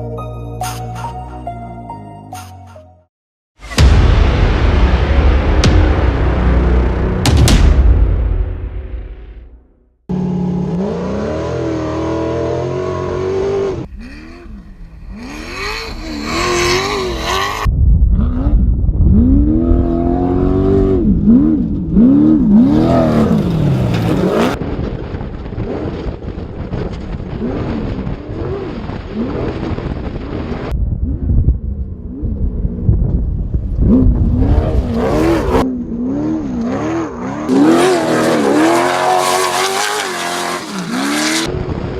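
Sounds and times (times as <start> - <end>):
race car engine revving: 10.1 - 17.7, 33.8 - 41.5.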